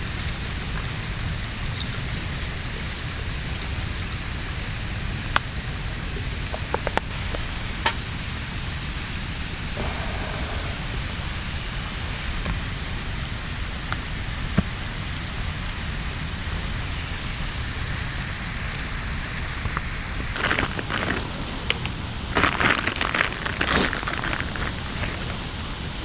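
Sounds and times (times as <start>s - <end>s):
steady rushing hiss: 7.1s - 15.4s, 19.4s - 26.0s
rustling and crinkling handling: 20.2s - 26.0s.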